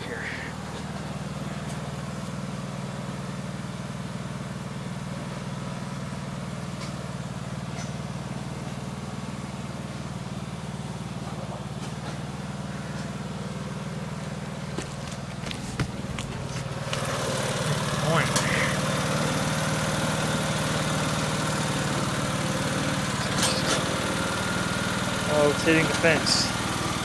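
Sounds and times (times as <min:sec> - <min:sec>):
lawn mower engine droning: 0:00.0 - 0:27.0.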